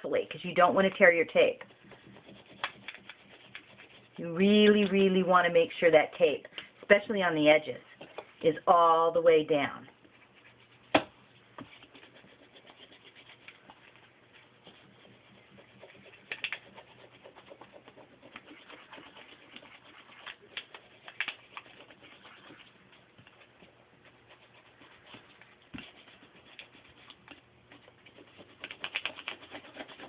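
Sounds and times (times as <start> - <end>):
tool scratching on foil tape: 0.6 - 4.8, 11.7 - 30.0.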